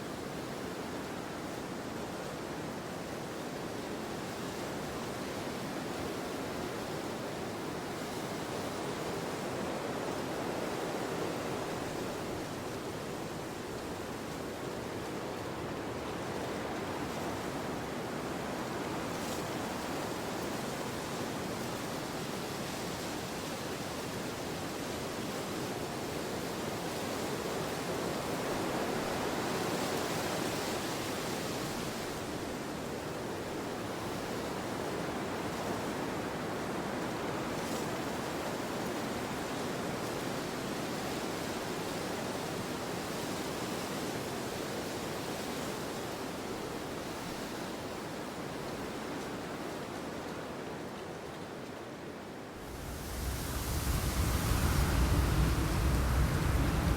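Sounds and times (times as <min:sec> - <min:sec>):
gusty wind through trees: 0:51.7 - 0:56.9.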